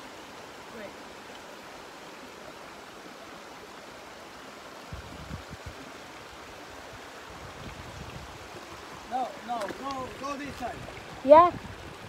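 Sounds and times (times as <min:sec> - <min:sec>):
sea water washing along shore: 0:00.0 - 0:12.0
wind buffeting microphone: 0:04.9 - 0:05.8, 0:06.8 - 0:09.2, 0:09.8 - 0:12.0.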